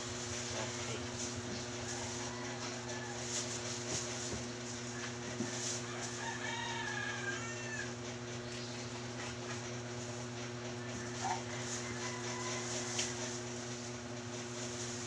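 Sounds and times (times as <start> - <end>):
steady low hum: 0.0 - 15.0
rooster crowing: 1.8 - 3.8, 4.9 - 8.0, 10.8 - 13.6.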